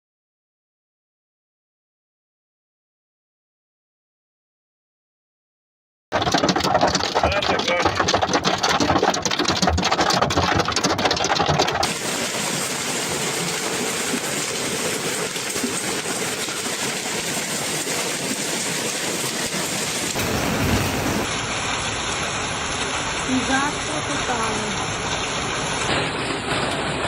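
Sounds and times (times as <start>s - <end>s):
hailstones rattling on hard surfaces: 6.2s - 20.4s, 25.4s - 27.0s
roar of hail and heavy rain: 6.2s - 27.0s.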